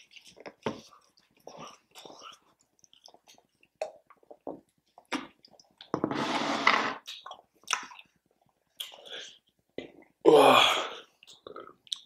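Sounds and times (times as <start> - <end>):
chewing food: 0.0 - 5.9, 7.0 - 10.1.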